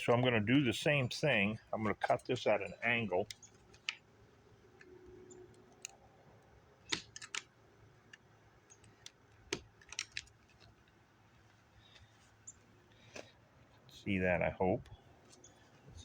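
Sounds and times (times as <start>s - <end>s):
rubber fuel line snipping: 6.9s - 7.5s.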